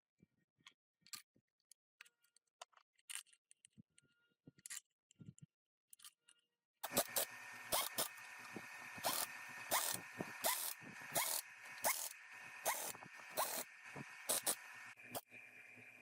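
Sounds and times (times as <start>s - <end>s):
tool strokes with squeak: 6.8s - 15.3s
steady whine: 6.9s - 16.0s.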